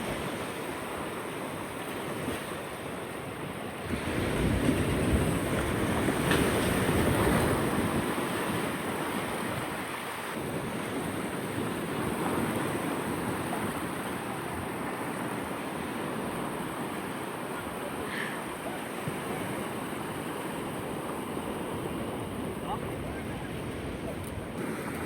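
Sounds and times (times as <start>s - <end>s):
surf washing onto beach: 0.0s - 25.0s
wind on microphone: 3.8s - 17.8s.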